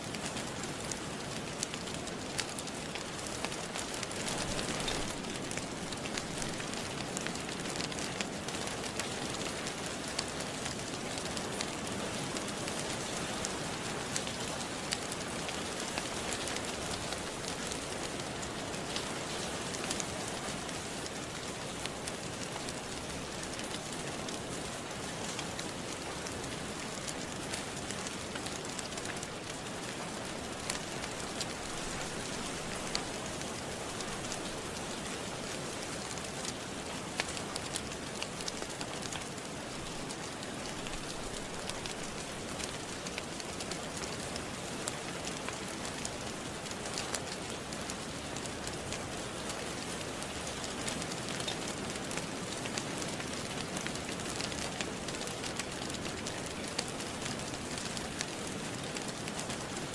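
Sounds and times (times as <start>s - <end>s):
steady rain falling: 0.0s - 59.9s
wood fire crackling and popping: 0.0s - 59.9s.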